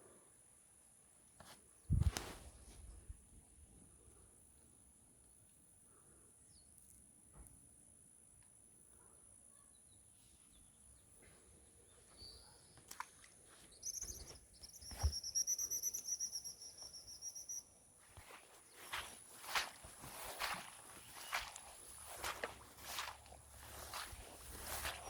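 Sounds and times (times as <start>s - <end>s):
bird trilling: 13.8s - 17.7s
high-pitched insect whine: 13.9s - 17.8s
rustling: 18.2s - 25.0s.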